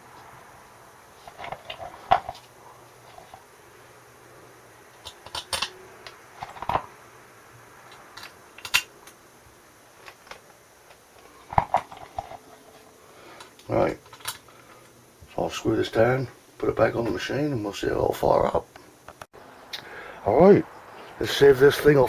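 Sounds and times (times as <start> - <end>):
metal parts and tools clinking: 1.2 - 3.4, 4.9 - 6.9, 7.9 - 9.2, 11.2 - 15.0.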